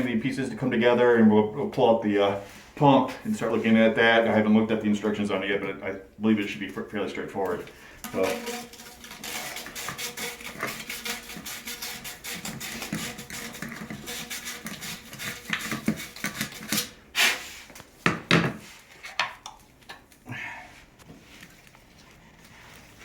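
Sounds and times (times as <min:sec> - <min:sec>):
plastic pipe pieces knocking: 0:08.0 - 0:11.4
rubbing strokes on plastic pipe: 0:08.0 - 0:17.9.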